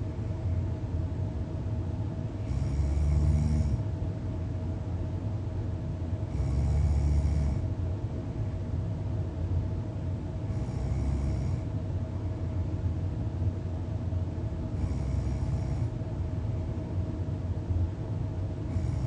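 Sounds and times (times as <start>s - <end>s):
person snoring deeply: 2.4s - 3.8s, 6.3s - 7.6s, 10.5s - 11.6s
quiet breathing: 10.4s - 12.8s, 14.7s - 16.7s.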